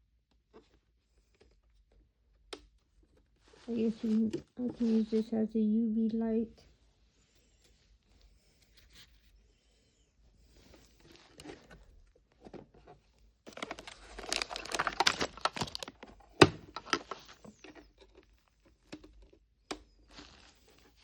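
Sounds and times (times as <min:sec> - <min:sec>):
plastic packaging crinkling: 0:03.5 - 0:05.3, 0:13.5 - 0:18.2.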